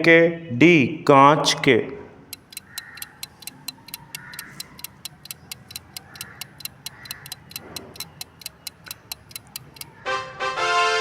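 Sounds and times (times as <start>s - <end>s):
clock ticking: 1.4s - 10.0s.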